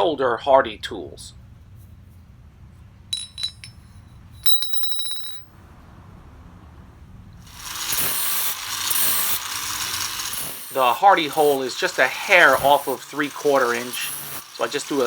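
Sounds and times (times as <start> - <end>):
steel tools clinking: 3.2 - 5.5, 7.8 - 15.0
grinder grinding steel: 7.5 - 15.0.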